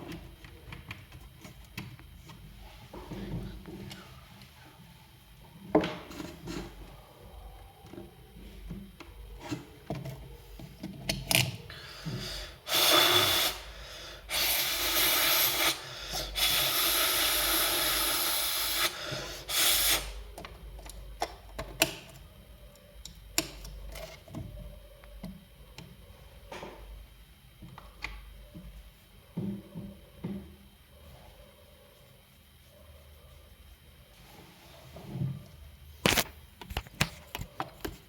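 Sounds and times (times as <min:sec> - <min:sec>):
hiss of blown air: 0:12.3 - 0:13.7, 0:14.3 - 0:20.2.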